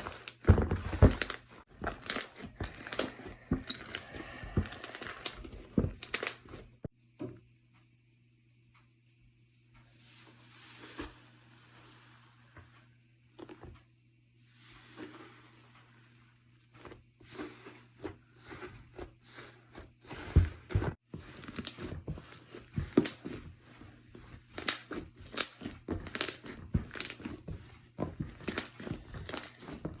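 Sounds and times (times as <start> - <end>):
slime crinkling and crackling: 0.0 - 5.4, 28.2 - 30.0.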